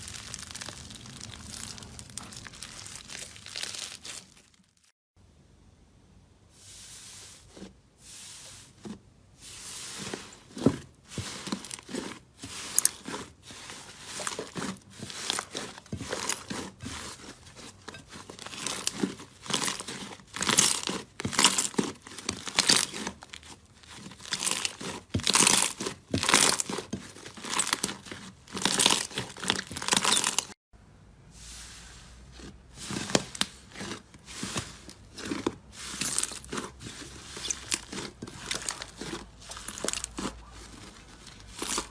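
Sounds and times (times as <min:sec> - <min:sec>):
slime crackling and popping: 0:00.0 - 0:04.9.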